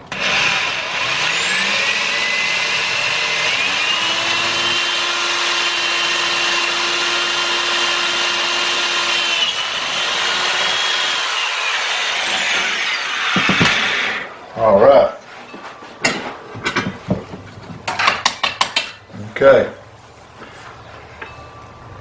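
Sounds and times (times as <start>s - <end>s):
electric drill drilling through metal: 0.0s - 14.3s.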